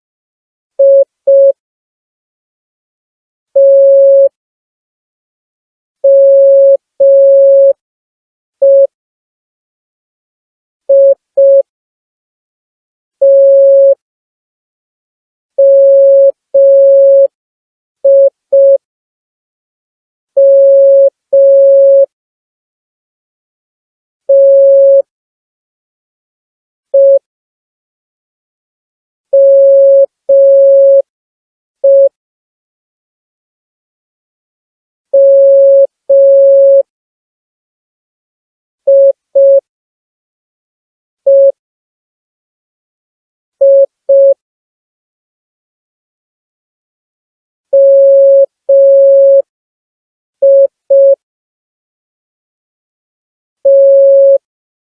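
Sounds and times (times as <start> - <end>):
morse code beeps: 3.6 - 4.3, 6.1 - 7.7, 10.9 - 11.6, 13.2 - 14.0, 24.3 - 25.0, 27.0 - 27.2, 29.4 - 31.0, 31.8 - 32.1, 35.2 - 36.8, 38.9 - 39.6, 41.3 - 41.5, 43.6 - 44.4, 47.8 - 49.4, 50.4 - 51.2, 53.6 - 54.4.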